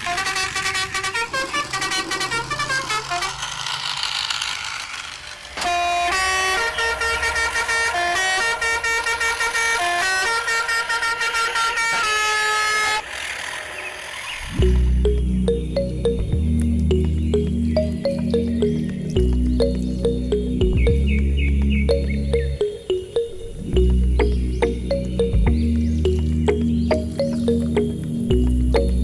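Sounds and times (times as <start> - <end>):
hiss: 1.2 - 11.0
horn playing held notes: 5.6 - 12.4.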